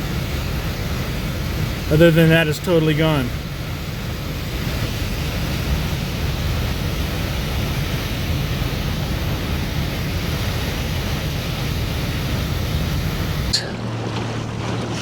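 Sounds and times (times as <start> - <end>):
boat motor running: 0.0 - 15.0
wind on microphone: 3.3 - 15.0.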